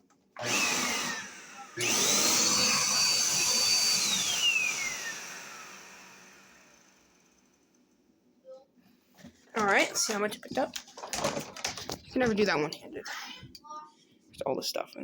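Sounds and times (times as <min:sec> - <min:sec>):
vacuum cleaner motor whine: 0:00.4 - 0:07.5.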